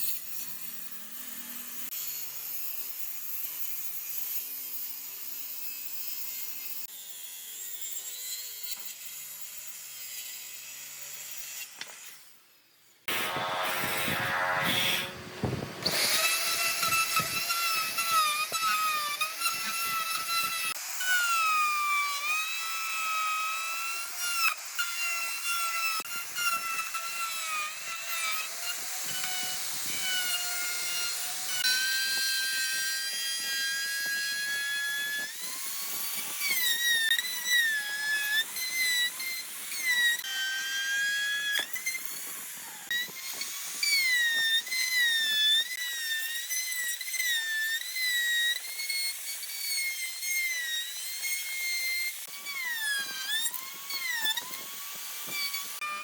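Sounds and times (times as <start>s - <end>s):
power tool motor whining: 0.0s - 56.0s.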